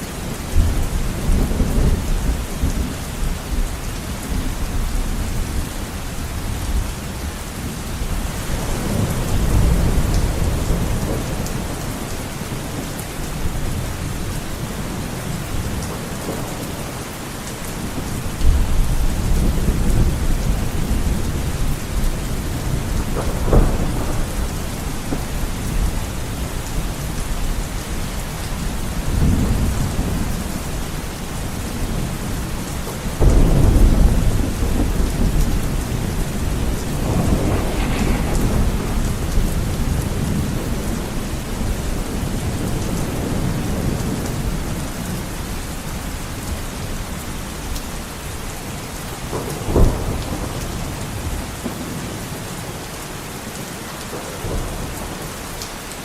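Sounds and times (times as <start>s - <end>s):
heavy rain on a window: 0.0s - 56.0s
thunder rumbling: 8.0s - 46.9s, 49.2s - 52.4s
sharp thunder crack: 33.2s - 41.8s.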